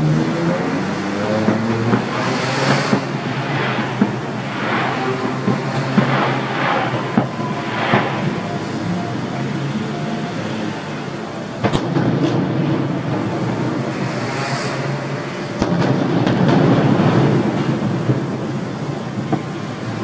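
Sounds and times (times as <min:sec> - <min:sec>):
fireworks rumbling and crackling: 0:00.0 - 0:20.0
fireworks sharp bangs: 0:01.4 - 0:09.3, 0:11.6 - 0:19.9.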